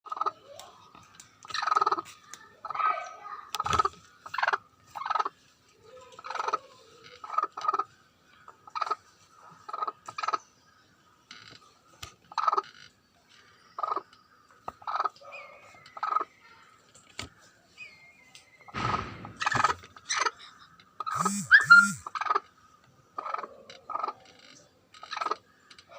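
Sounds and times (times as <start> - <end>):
hen clucking: 1.4 - 2.8, 3.6 - 5.4, 6.2 - 10.4, 12.3 - 12.6, 13.8 - 14.1, 14.7 - 15.3, 15.9 - 16.3, 18.7 - 22.5, 23.2 - 24.2.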